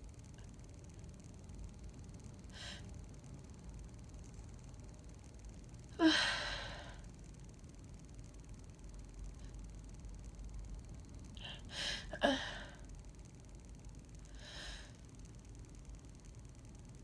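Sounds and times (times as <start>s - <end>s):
woman breathing: 2.5s - 2.9s, 6.0s - 7.0s, 11.4s - 12.9s, 14.3s - 15.0s.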